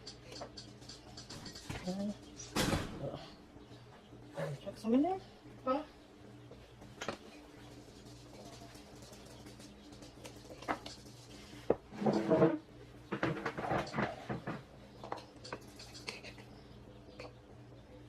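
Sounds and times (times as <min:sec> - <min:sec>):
steady low hum: 0:00.0 - 0:18.0
kitchen knocks and clatter: 0:13.1 - 0:15.2.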